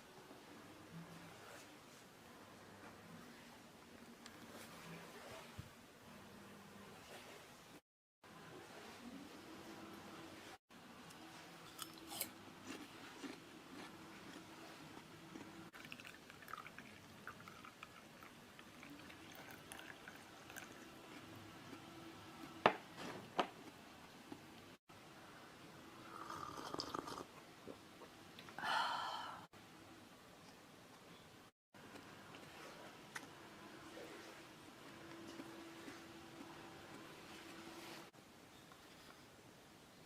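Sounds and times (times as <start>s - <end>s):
close chewing of food: 11.6s - 22.6s, 34.2s - 37.2s.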